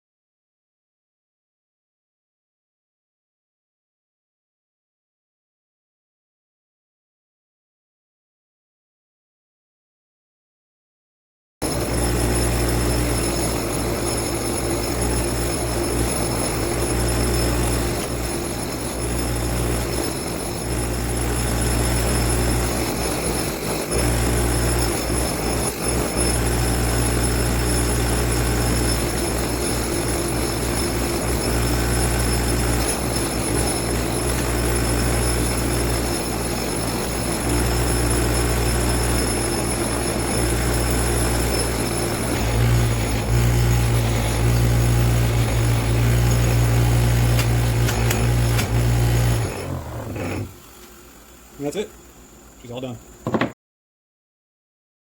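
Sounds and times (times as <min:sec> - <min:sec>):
rotary power tool whining: 0:11.6 - 0:53.6.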